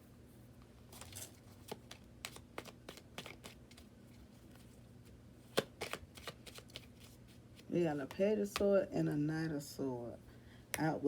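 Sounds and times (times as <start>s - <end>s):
cards being shuffled: 0.9s - 7.7s.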